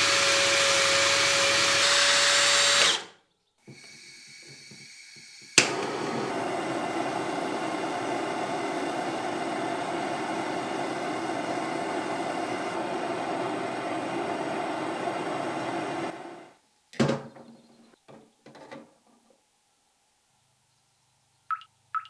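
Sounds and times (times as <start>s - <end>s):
power tool motor spinning down: 0.0s - 3.1s, 3.7s - 16.5s.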